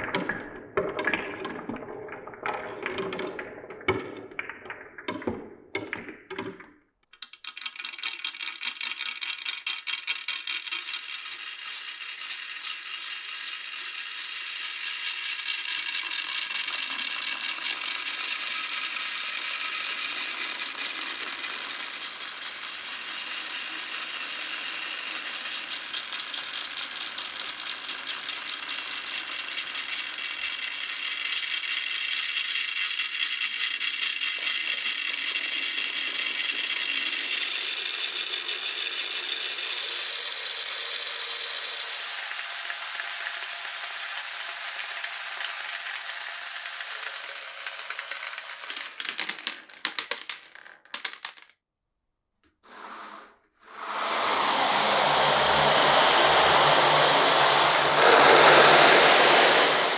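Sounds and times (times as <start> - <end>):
marbles clattering along a run: 0.0 - 51.6
steady rushing noise: 53.7 - 59.9.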